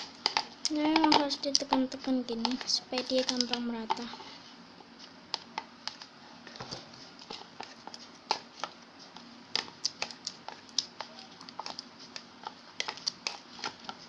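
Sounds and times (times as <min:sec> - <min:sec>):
stirrer clicking in clay: 0:00.0 - 0:04.1, 0:07.2 - 0:14.0.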